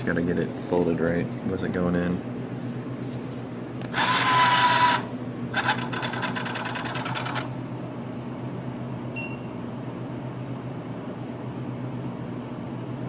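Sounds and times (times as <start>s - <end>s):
electrical hum: 0.0s - 13.0s
bill acceptor motor whirring: 3.8s - 7.6s
short high beep: 9.2s - 9.5s.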